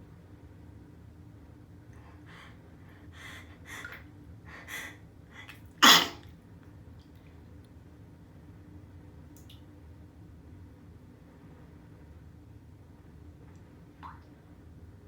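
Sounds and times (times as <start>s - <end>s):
catching inhalations: 2.0s - 6.1s
person sneezing: 5.8s - 6.2s.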